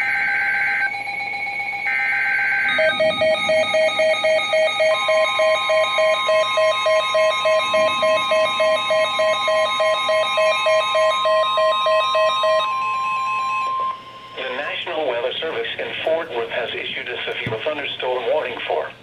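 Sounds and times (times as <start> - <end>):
warbling two-tone data squawks: 0.0 - 14.8
steady electronic tone: 0.0 - 15.2
rapid electronic alarm beeping: 0.0 - 15.8.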